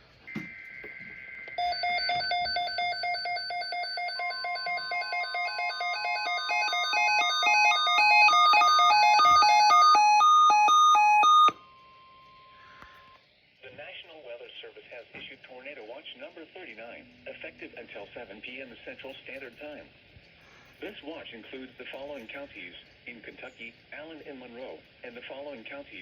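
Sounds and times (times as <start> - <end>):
rapid electronic alarm beeps: 0.3 - 13.2.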